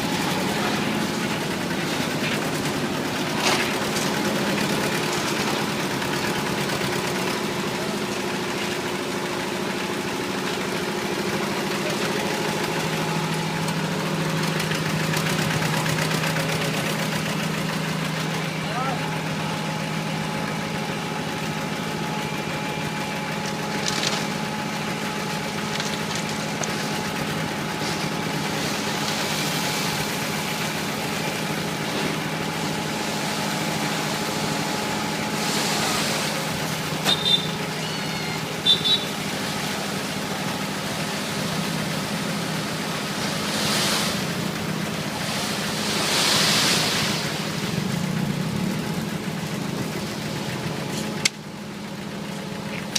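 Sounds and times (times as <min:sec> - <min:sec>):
truck engines running: 0:00.0 - 0:52.9
hiss: 0:45.2 - 0:47.6.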